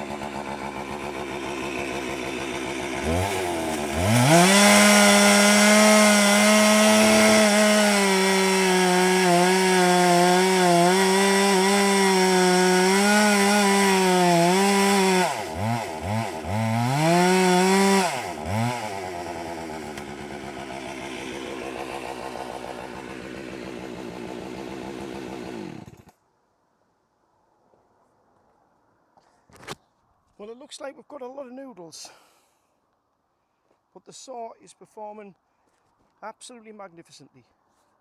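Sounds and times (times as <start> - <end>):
chainsaw cutting: 0.0 - 26.2.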